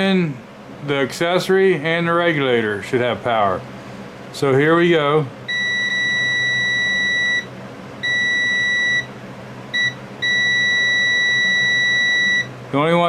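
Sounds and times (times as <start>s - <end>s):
multimeter high-pitched beep: 5.5s - 9.1s, 9.7s - 12.5s.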